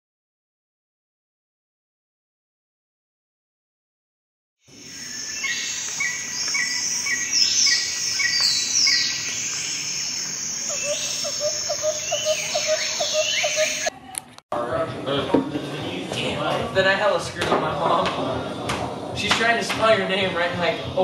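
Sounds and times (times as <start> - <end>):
lower repeated bird notes: 4.6 - 13.9
birds chirping: 4.6 - 14.0.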